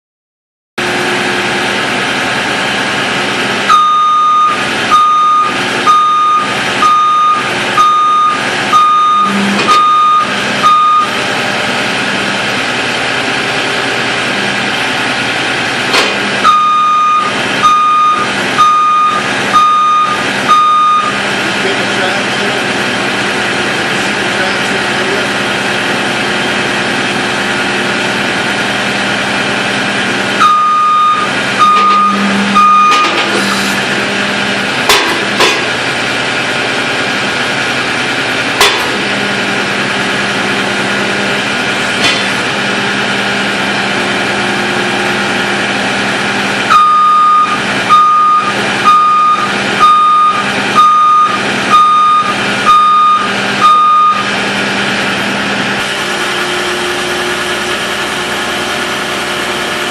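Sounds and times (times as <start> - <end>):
diesel engine running: 0.8 - 59.9
backup alarm beeping: 3.7 - 11.2, 16.4 - 21.2, 30.4 - 33.3, 46.7 - 54.3.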